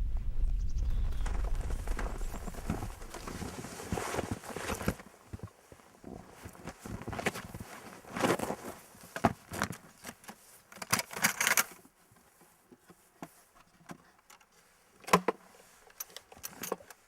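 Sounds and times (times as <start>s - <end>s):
footsteps crunching in snow: 0.6s - 10.1s.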